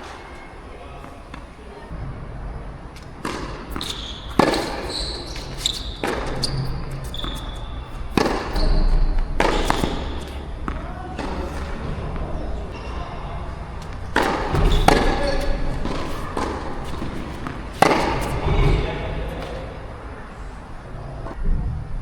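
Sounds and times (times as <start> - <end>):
shoe squeaks: 2.9 - 21.4
tennis racket striking ball: 3.0 - 20.0
wind rumble on microphone: 19.9 - 22.0.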